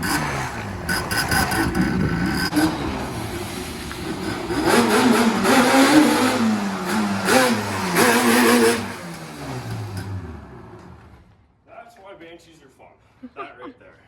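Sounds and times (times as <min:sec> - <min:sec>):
two-stroke quad engine revving: 0:00.0 - 0:11.0.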